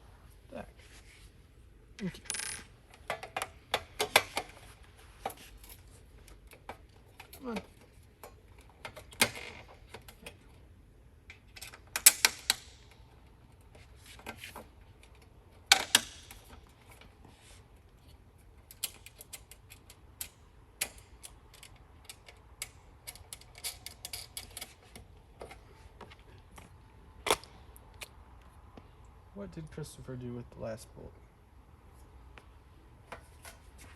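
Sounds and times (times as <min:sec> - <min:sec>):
metal hardware clicking and clinking: 0:02.0 - 0:04.5, 0:18.6 - 0:25.6.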